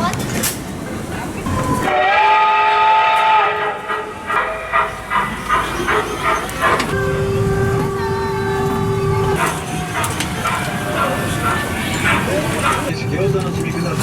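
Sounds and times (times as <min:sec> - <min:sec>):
steam train whistle: 0:01.8 - 0:06.8
level-crossing alarm ringing: 0:04.2 - 0:12.8.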